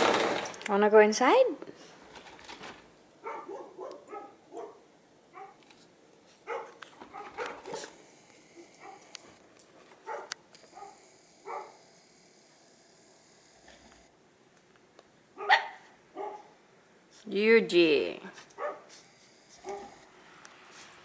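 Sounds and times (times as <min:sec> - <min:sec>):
dog barking: 0:03.2 - 0:05.6, 0:06.4 - 0:07.9, 0:08.8 - 0:09.1, 0:10.0 - 0:11.8, 0:15.4 - 0:16.6, 0:18.6 - 0:18.9, 0:19.6 - 0:20.0.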